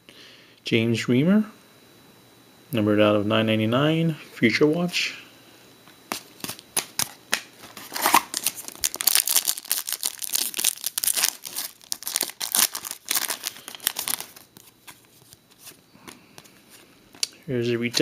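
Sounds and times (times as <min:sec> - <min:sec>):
foil wrapper crinkling and tearing: 0:06.1 - 0:15.8.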